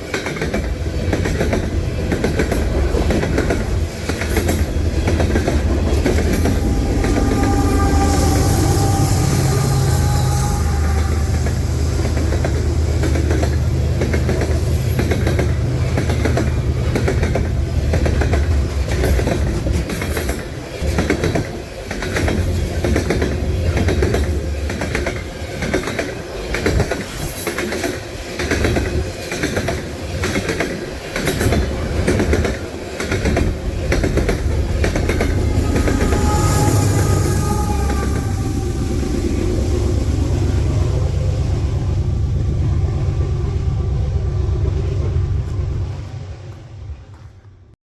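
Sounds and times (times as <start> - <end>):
train wheels clickety-clack: 0.0 - 40.0
diesel locomotive rumble: 0.5 - 27.2, 28.4 - 47.8
train horn: 6.2 - 15.0, 33.8 - 46.2.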